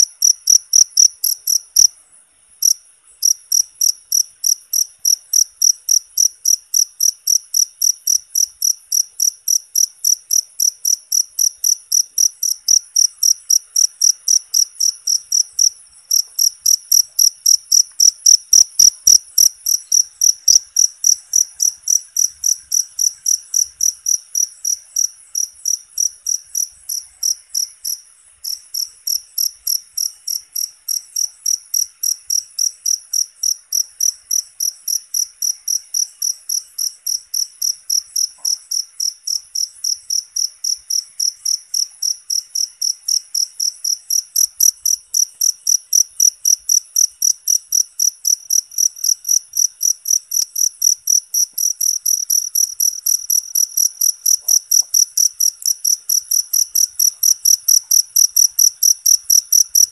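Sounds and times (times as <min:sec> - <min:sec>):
cricket chirping: 0:00.0 - 0:59.9.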